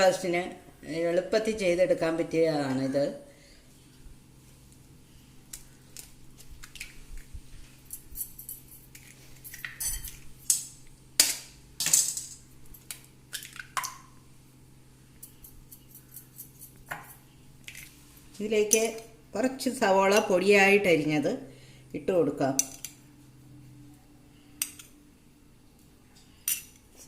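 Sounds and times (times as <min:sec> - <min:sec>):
dishes and utensils clinking: 0:08.0 - 0:10.2.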